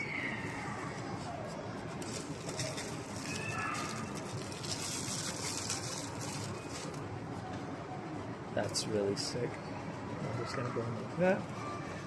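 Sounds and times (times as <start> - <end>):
packaging rustling: 1.4 - 7.1.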